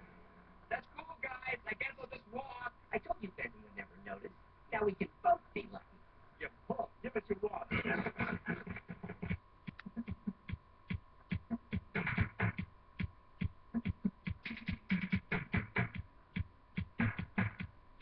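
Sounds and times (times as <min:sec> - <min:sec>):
percussive cartoon music: 0:11.4 - 0:12.6, 0:13.8 - 0:16.0, 0:16.8 - 0:17.7.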